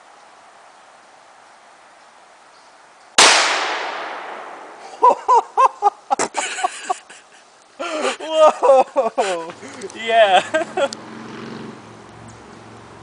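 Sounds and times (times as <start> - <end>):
loud gunshot with echo: 3.2 - 4.8
person reacting: 4.8 - 6.7, 7.8 - 10.8.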